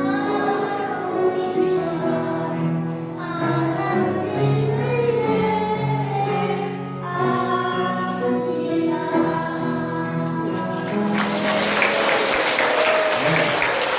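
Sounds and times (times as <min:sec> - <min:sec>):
children's choir singing: 0:00.0 - 0:13.9
musical accompaniment: 0:00.0 - 0:13.9
applause: 0:10.6 - 0:13.9.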